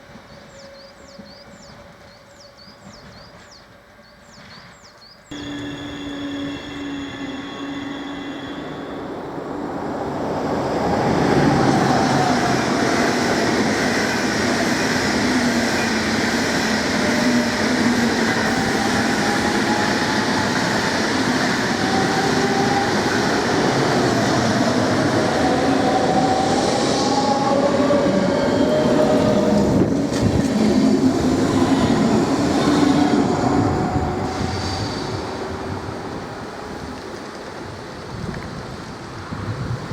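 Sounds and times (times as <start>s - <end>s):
train rail rumble: 0.0s - 39.9s
train whine: 0.0s - 39.9s
steady tones: 5.3s - 10.2s.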